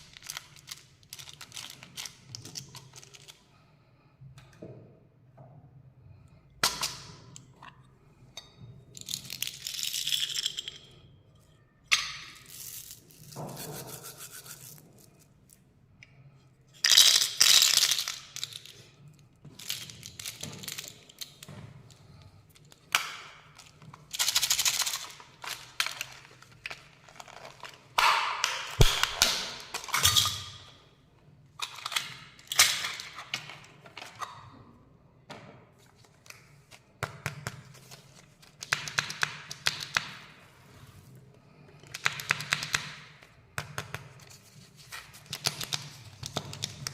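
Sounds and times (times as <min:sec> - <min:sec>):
foil and plastic wrapper crinkling: 0:00.0 - 0:03.3, 0:24.0 - 0:27.9.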